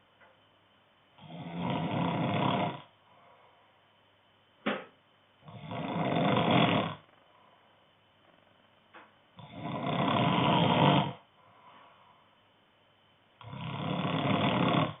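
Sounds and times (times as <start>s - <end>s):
man snoring: 1.2s - 2.9s, 5.4s - 7.2s, 9.4s - 11.3s, 13.4s - 15.0s.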